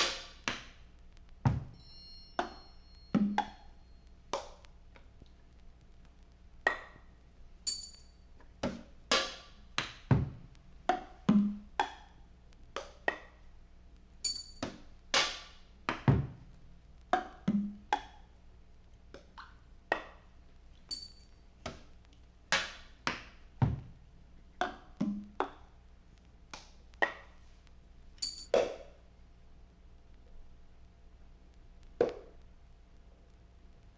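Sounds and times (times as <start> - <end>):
drum strikes: 1.5 - 1.8.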